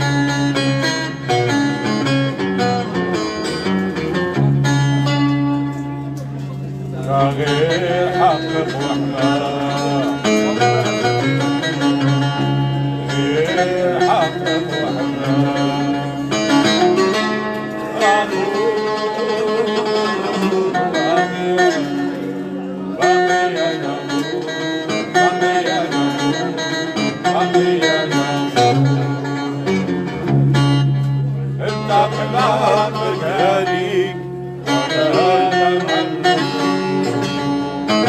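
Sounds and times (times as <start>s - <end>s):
plucked string instruments: 0.0s - 38.0s
person singing wavering melody: 13.0s - 17.1s, 31.6s - 37.4s.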